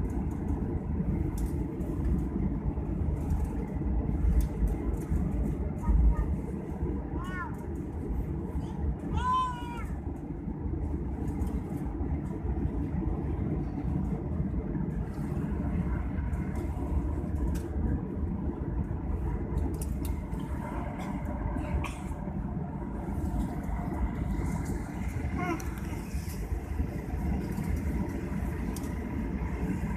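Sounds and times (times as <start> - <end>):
airliner cabin rumble and hum: 0.0 - 29.9.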